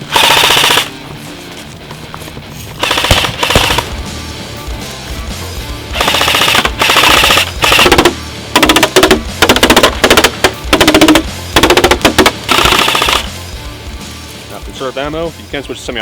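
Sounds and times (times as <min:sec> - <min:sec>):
airsoft gun firing bursts: 0:00.0 - 0:00.9, 0:02.8 - 0:04.0, 0:06.0 - 0:13.4.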